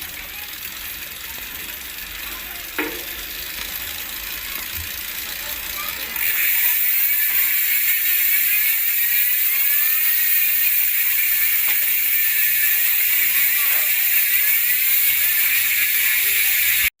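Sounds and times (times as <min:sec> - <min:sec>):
bicycle hub freewheeling buzz: 0:00.0 - 0:17.0.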